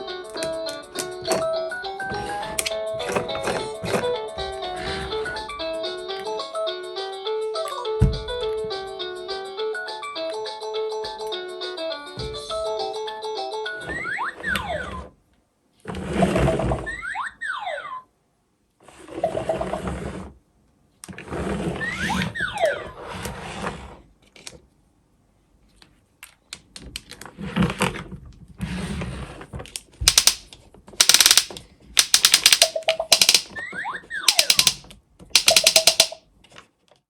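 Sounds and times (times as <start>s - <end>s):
rapid clattering clicks: 30.1s - 33.5s, 34.3s - 34.8s, 35.4s - 36.2s.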